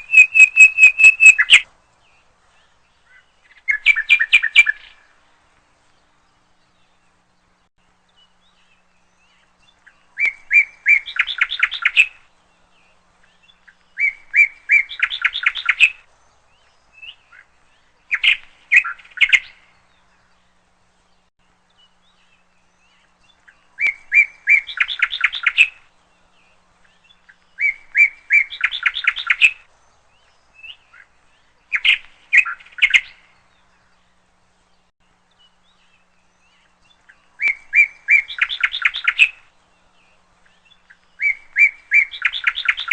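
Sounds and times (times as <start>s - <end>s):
songbird singing trilled phrase: 0.0s - 1.7s, 35.8s - 39.5s, 40.5s - 42.9s.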